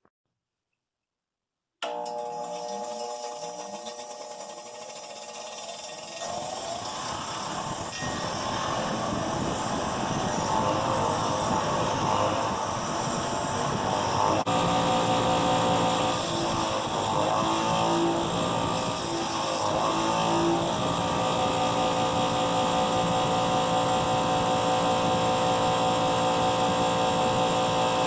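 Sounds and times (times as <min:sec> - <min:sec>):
power tool motor running: 0:01.8 - 0:28.0
grinding on rusty metal: 0:02.4 - 0:24.2.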